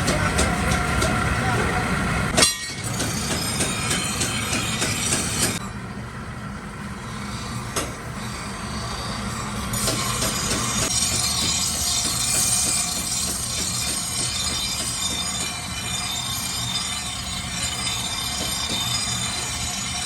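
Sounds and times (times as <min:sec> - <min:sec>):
workshop machinery humming: 0:00.0 - 0:20.0.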